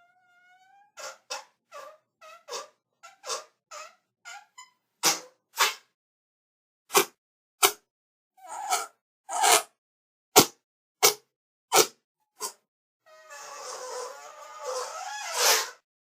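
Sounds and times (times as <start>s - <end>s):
whoopee cushion fart sounds: 10.4s - 12.6s.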